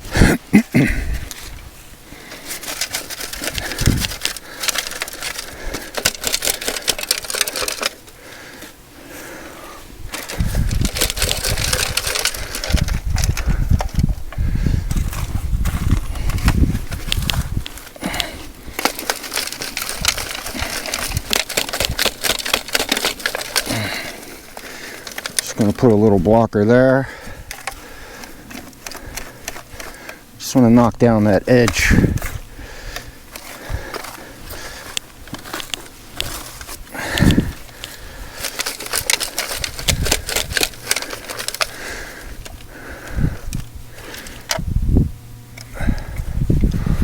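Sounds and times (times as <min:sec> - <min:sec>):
dirt scraped by hand: 0:00.0 - 0:26.4.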